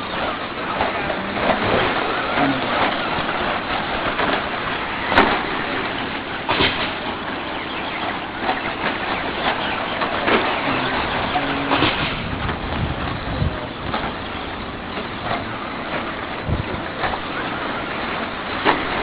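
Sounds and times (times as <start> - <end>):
sharp crack: 0.8 - 7.4, 8.4 - 12.8.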